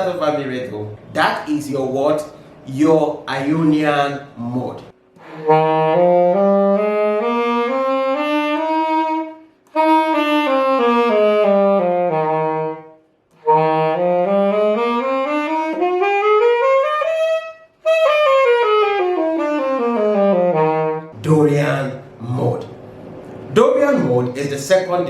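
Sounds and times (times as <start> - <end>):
saxophone playing scale: 5.1 - 23.4.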